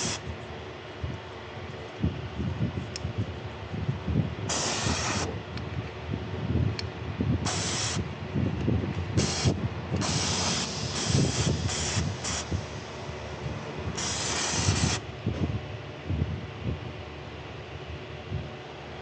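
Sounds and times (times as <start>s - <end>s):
short bursts of hissing: 0.0s - 0.2s, 4.5s - 5.3s, 7.5s - 8.0s, 9.2s - 12.6s, 14.0s - 15.0s.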